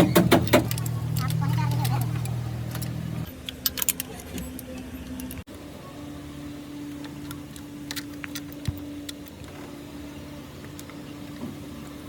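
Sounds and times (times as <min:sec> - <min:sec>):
car engine humming: 0:00.0 - 0:05.5.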